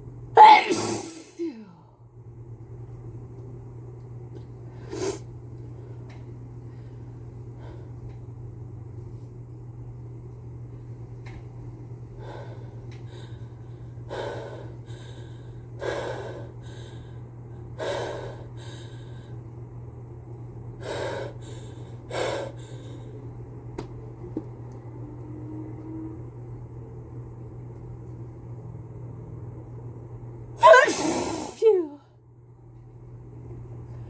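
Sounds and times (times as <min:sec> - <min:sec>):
steady low hum: 0:00.0 - 0:34.0
person gasping breaths: 0:20.8 - 0:23.2.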